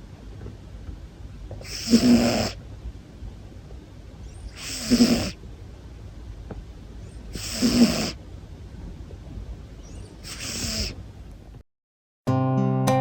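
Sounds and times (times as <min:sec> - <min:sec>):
cat snoring: 0:01.6 - 0:02.6, 0:04.5 - 0:05.4, 0:07.3 - 0:08.2, 0:10.2 - 0:11.0.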